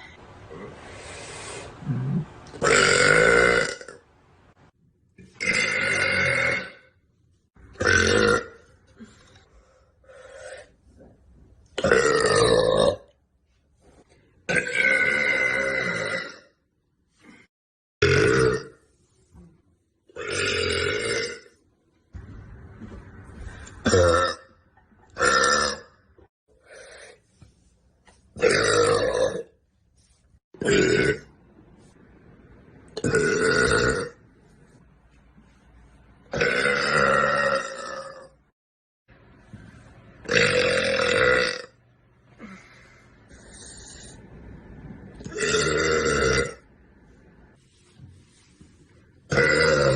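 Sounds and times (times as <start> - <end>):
woman burping: 1.9 - 4.0, 36.3 - 38.3, 49.3 - 49.9.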